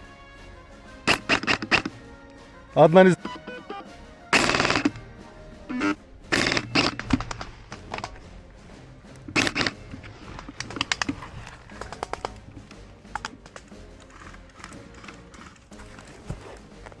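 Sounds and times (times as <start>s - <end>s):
airsoft guns firing bursts: 1.1s - 1.9s, 4.4s - 5.0s, 5.7s - 8.2s, 9.4s - 12.4s
single clicks and crackles: 1.1s - 2.0s, 4.4s - 5.0s, 6.4s - 8.2s, 9.4s - 16.4s.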